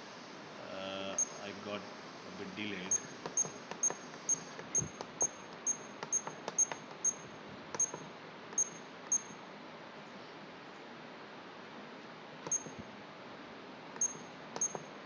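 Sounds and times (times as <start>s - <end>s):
short high keypad beeps: 12.5s - 12.8s, 14.0s - 14.8s.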